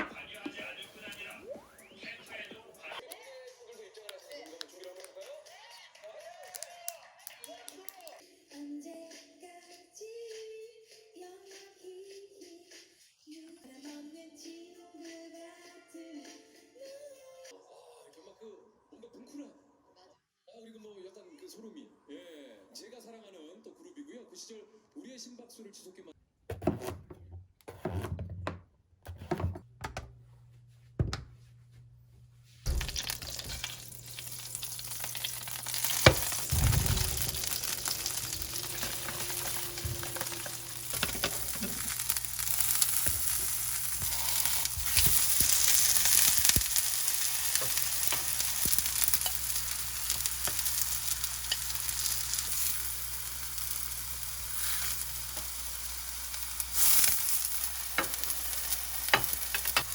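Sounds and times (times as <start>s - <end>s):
food sizzling in a pan: 32.6s - 59.9s
sharp pops of frying: 32.7s - 59.9s.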